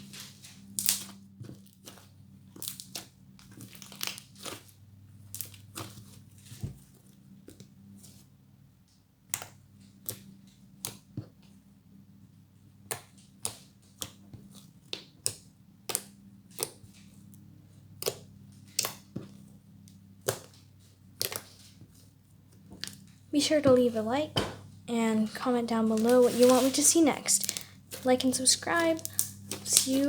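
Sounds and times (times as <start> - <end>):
faint steady hum: 21.8 - 30.0.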